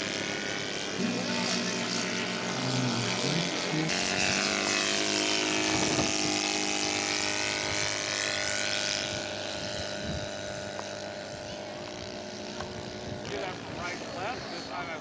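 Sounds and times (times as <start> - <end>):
model airplane engine flying past: 0.0 - 15.0.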